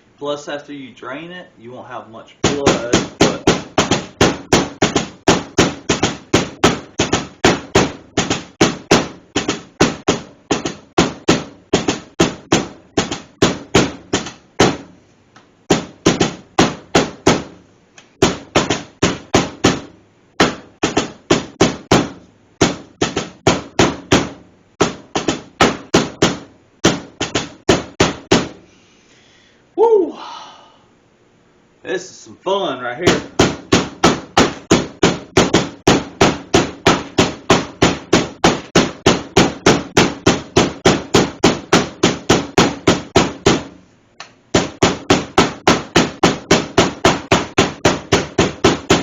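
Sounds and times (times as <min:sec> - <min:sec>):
meat tenderizer pounding meat: 0:02.4 - 0:14.9, 0:18.2 - 0:28.6, 0:33.1 - 0:43.8, 0:44.6 - 0:49.0.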